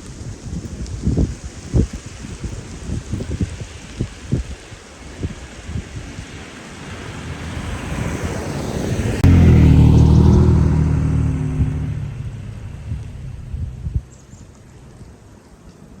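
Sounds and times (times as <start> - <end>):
tyre and road noise: 0.0 - 15.9
loud engine drone: 6.9 - 14.0.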